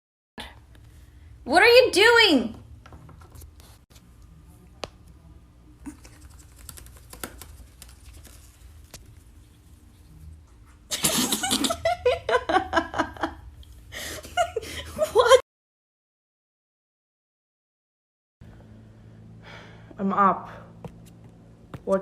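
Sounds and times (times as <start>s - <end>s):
faint clicks and taps: 5.9s - 9.2s.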